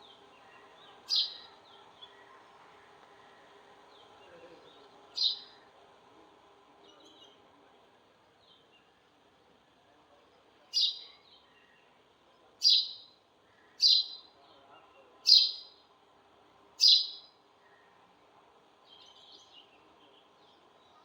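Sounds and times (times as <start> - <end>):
sparrow chirping: 0.4 - 1.8, 5.2 - 5.6, 10.7 - 11.1, 12.6 - 13.1, 13.8 - 14.3, 15.2 - 15.8, 16.8 - 17.3.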